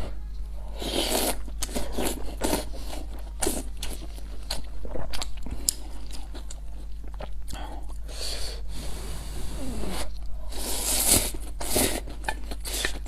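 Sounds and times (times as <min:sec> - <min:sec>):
person chewing food: 0:00.7 - 0:08.2, 0:10.1 - 0:13.0.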